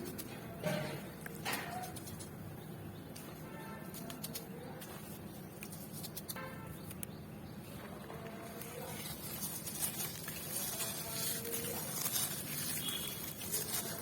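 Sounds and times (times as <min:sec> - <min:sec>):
charcoal crumbling: 0:08.2 - 0:14.0.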